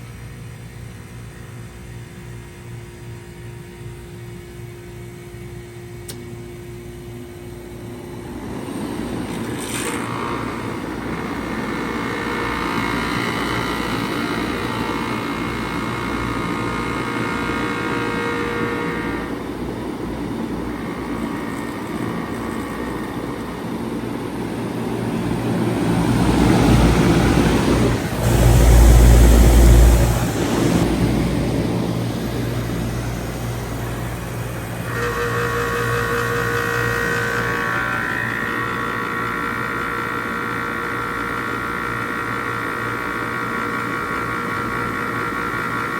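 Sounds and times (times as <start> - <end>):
heat pump humming: 0.0 - 45.9
rushing air noise: 24.9 - 35.0
heavy low rumble: 26.9 - 34.4.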